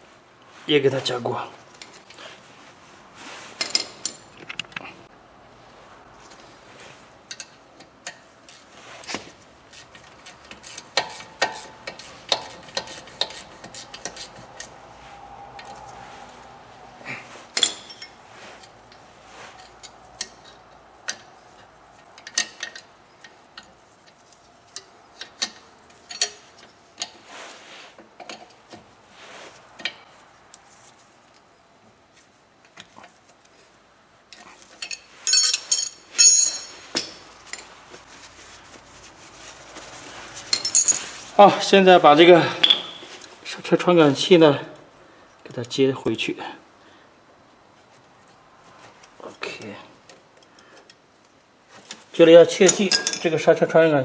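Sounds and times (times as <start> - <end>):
hand tools clinking on metal: 17.5 - 21.4, 24.6 - 27.2, 34.3 - 37.7, 40.4 - 41.3, 52.6 - 53.4.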